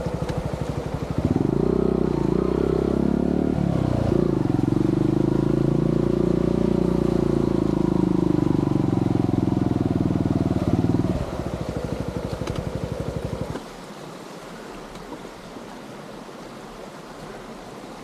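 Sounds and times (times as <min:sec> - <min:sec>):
motorcycle engine running: 0:00.0 - 0:13.6.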